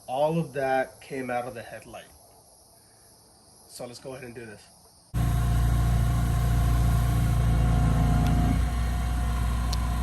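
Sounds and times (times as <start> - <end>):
electric polisher running: 5.2 - 10.0.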